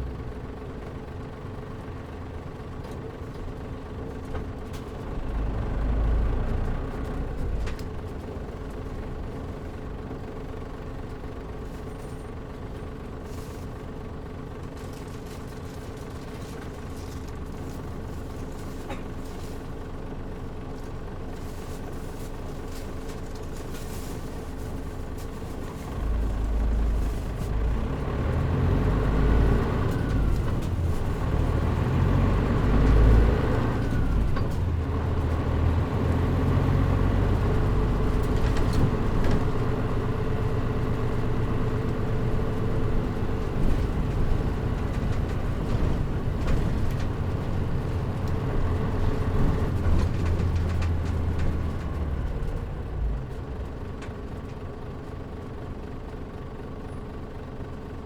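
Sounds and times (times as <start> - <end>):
bus diesel engine accelerating: 0.0 - 58.0.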